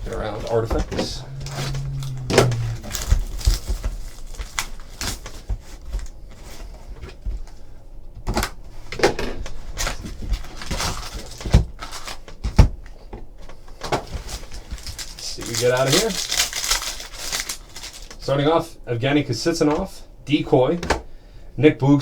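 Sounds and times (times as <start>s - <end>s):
wrapper rustling: 10.4s - 12.2s, 14.2s - 18.2s.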